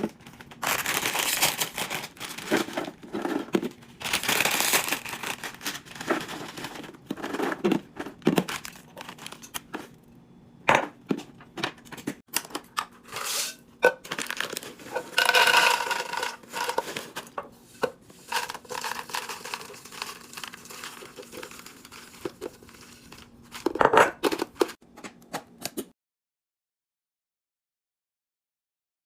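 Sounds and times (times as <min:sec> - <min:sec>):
plastic packaging crinkling and tearing: 0:00.0 - 0:10.0, 0:14.0 - 0:17.3, 0:18.2 - 0:24.8.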